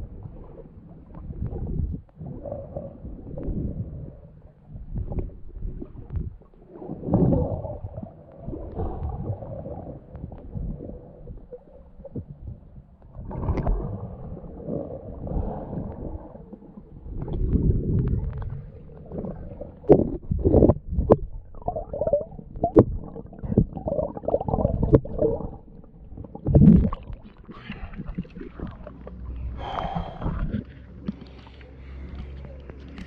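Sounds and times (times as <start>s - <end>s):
muffled underwater gurgling: 0.0s - 33.0s.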